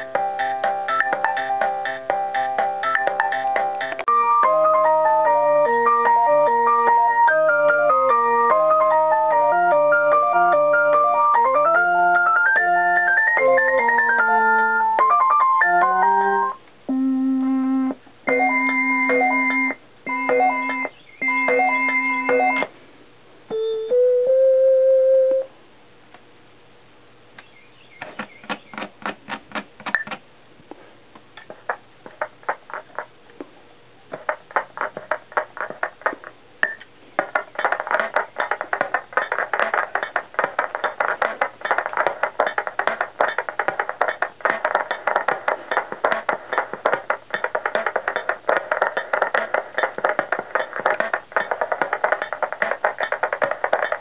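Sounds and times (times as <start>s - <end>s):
sampling keyboard notes: 0.0s - 22.7s, 23.5s - 25.5s.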